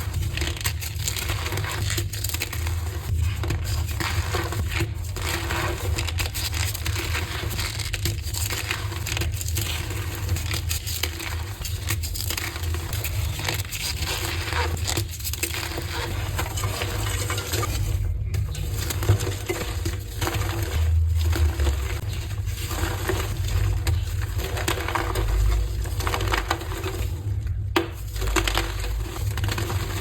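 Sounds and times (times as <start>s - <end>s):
chalk being crushed: 0.0s - 17.8s.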